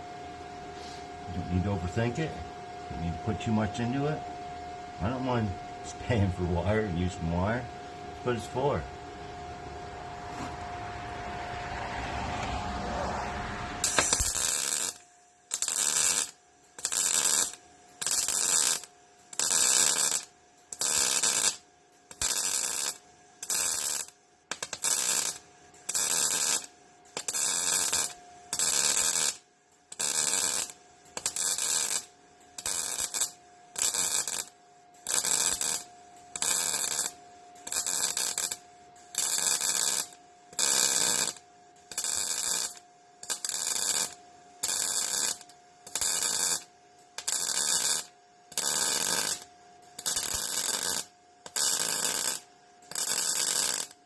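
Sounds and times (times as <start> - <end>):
faint steady hum: 0.0 - 54.0
welding arc crackling: 13.8 - 54.0.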